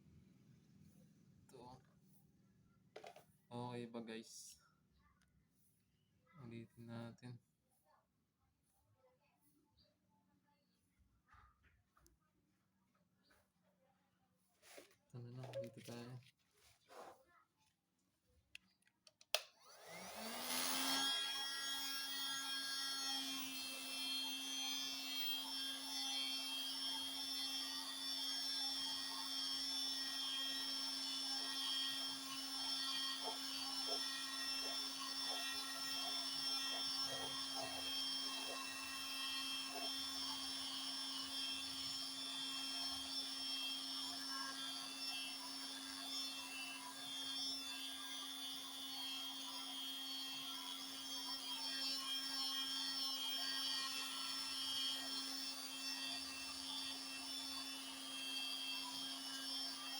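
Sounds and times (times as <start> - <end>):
heat gun fan whine: 19.3 - 59.9.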